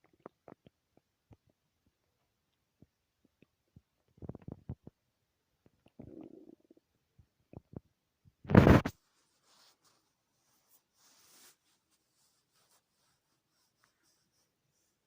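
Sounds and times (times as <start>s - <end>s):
stomach gurgling and rumbling: 0.0s - 8.9s.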